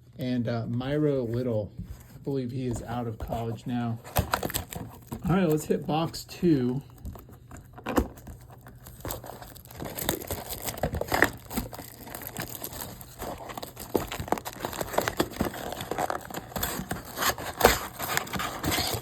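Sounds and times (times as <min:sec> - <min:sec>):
plastic wrapping crinkling: 0:01.3 - 0:19.0.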